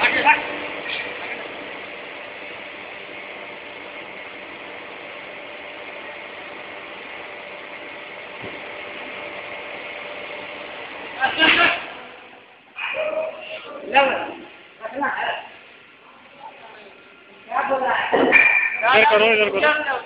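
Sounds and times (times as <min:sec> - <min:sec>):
industrial machinery drone: 0:00.0 - 0:12.6.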